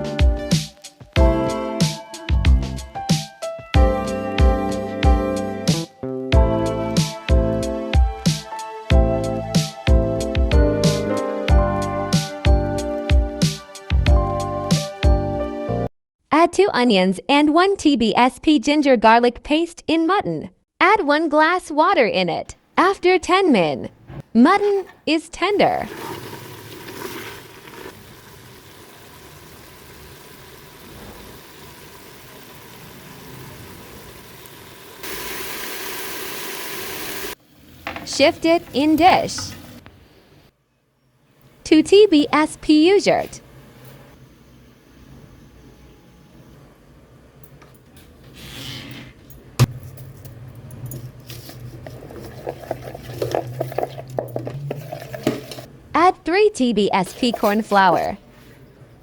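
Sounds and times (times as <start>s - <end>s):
meat cooking in water in a pot: 25.5s - 38.3s.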